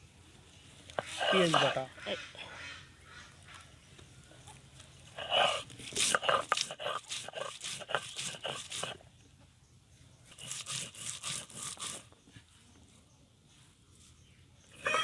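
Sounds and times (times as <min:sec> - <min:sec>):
scraping or crunching strokes: 0:05.2 - 0:09.0, 0:10.3 - 0:12.1.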